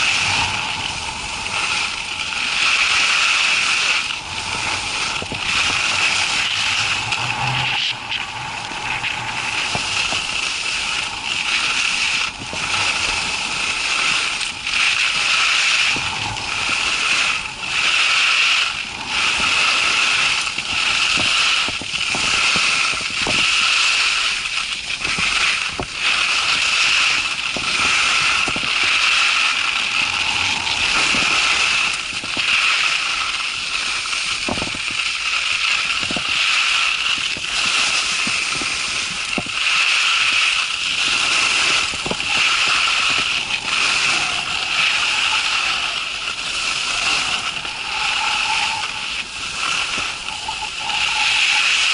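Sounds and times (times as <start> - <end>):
wind rushing over microphone: 0.0 - 51.9
skis scraping over snow: 19.2 - 51.9.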